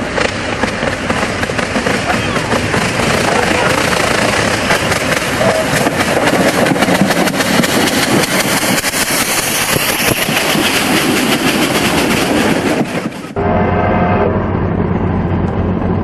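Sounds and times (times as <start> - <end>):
train wheels clattering: 0.0 - 13.4
train hiss: 1.0 - 12.7.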